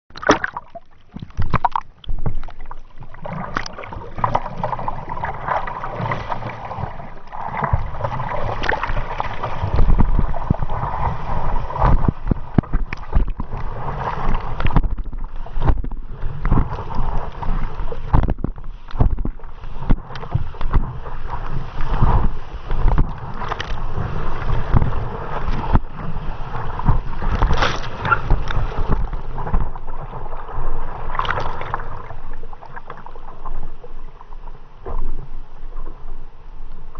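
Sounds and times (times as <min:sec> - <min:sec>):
water rushing and splashing: 0:00.1 - 0:36.9
wind buffeting microphone: 0:09.4 - 0:29.7.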